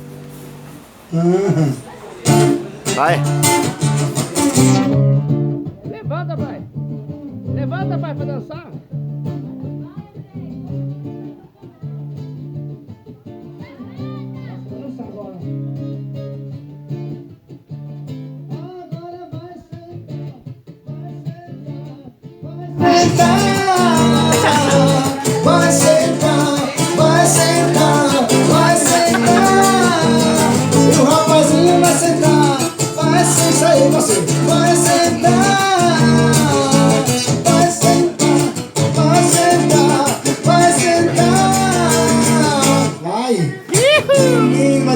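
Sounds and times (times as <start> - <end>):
guitar accompaniment: 0.0 - 44.9
person singing: 2.9 - 3.8, 22.8 - 44.9.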